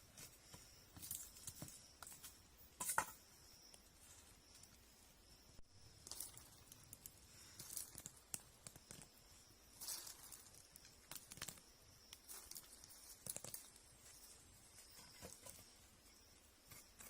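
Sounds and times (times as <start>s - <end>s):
dry plant material rustling: 9.7s - 11.6s, 12.2s - 15.5s.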